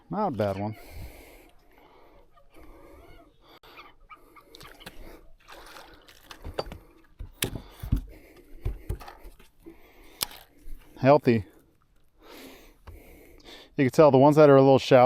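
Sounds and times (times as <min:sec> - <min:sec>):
water splashing and dripping: 0:04.4 - 0:08.2.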